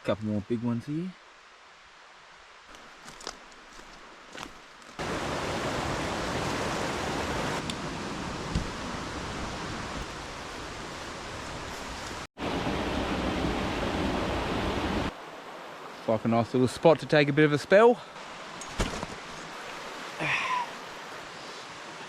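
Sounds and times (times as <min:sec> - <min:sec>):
fast-flowing river water: 0:05.0 - 0:07.6.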